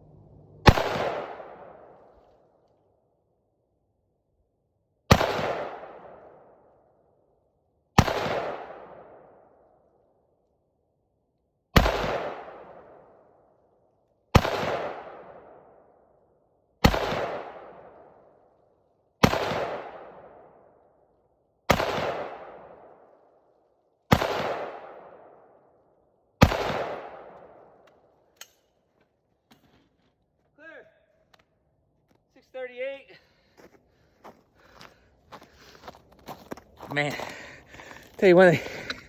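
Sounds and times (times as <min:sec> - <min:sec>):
rifle shots echoing: 0:00.6 - 0:02.1, 0:05.1 - 0:06.7, 0:08.0 - 0:09.6, 0:11.8 - 0:13.3, 0:14.3 - 0:15.9, 0:16.8 - 0:18.4, 0:19.2 - 0:20.8, 0:21.7 - 0:23.4, 0:24.1 - 0:25.7, 0:26.4 - 0:28.1.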